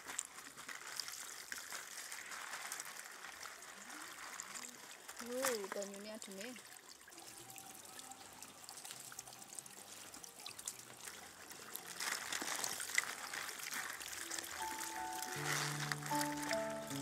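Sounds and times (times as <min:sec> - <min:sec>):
water trickling and pouring: 0:00.0 - 0:17.0
soft music: 0:14.2 - 0:17.0.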